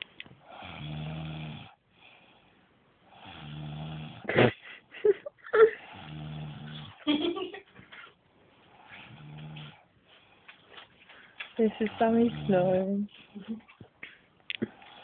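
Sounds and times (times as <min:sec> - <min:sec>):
short loud snoring bursts: 0:00.5 - 0:01.8, 0:03.2 - 0:04.3, 0:05.9 - 0:07.0
woman snoring: 0:03.2 - 0:04.4, 0:05.7 - 0:07.0, 0:11.9 - 0:12.9.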